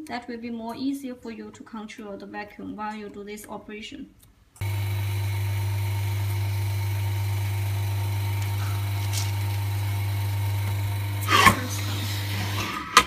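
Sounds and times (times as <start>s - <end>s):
vacuum pump humming: 4.6s - 13.0s.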